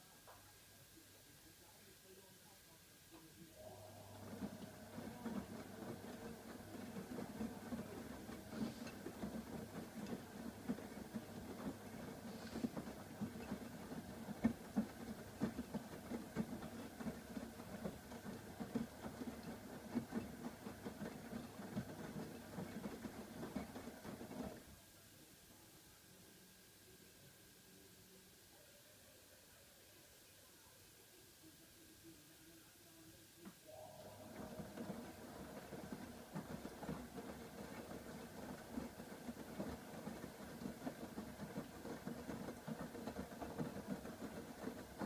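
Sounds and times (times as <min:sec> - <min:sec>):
washing machine motor humming: 0:03.6 - 0:24.8, 0:33.7 - 0:45.0.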